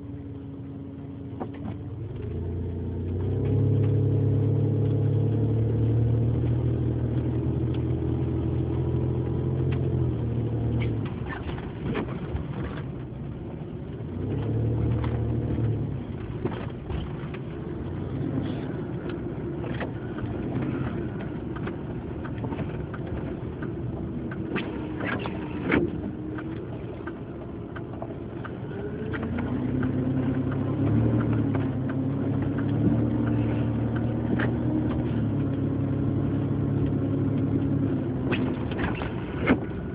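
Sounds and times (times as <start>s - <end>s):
vehicle engine under throttle: 14.2s - 39.9s
clicks and crackles: 14.3s - 39.9s.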